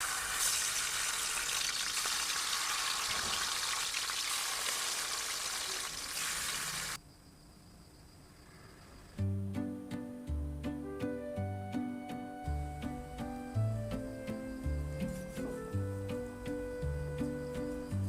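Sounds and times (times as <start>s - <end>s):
food sizzling in hot oil: 0.0s - 7.0s.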